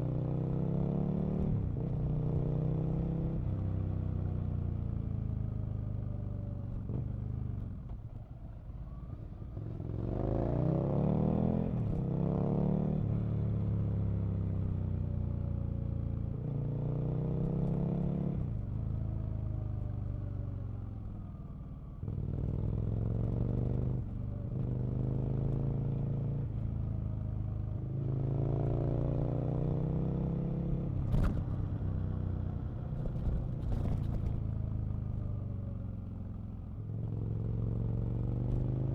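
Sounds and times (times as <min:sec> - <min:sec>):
motorcycle engine accelerating: 0:28.1 - 0:38.9.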